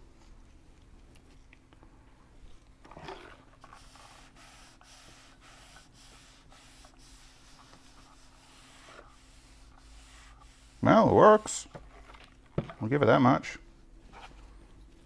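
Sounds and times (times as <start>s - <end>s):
steam iron hissing: 3.8s - 11.6s.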